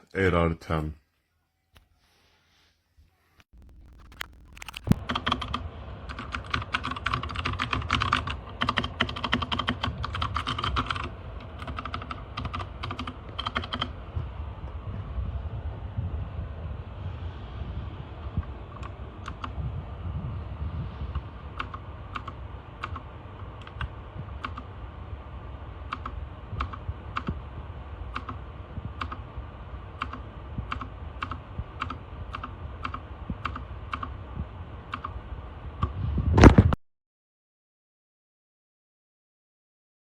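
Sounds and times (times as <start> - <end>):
steady low rumble: 3.6 - 36.8
mechanical keyboard key clicks: 30.0 - 34.1.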